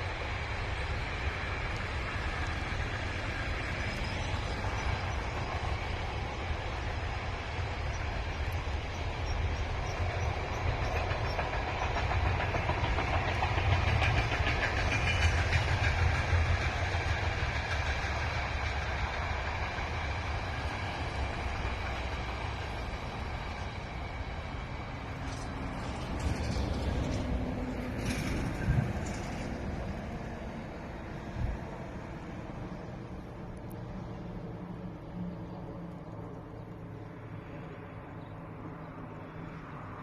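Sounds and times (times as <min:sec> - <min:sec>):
freight train rumbling: 0:00.0 - 0:40.0
wagon wheels clattering on rails: 0:10.5 - 0:18.9, 0:25.1 - 0:30.2.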